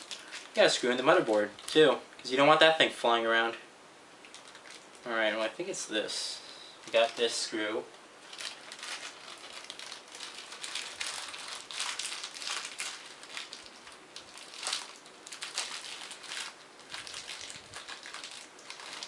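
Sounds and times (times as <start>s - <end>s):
plastic bag crinkling: 0.0s - 2.6s, 4.2s - 5.0s, 6.8s - 7.5s, 8.2s - 19.0s.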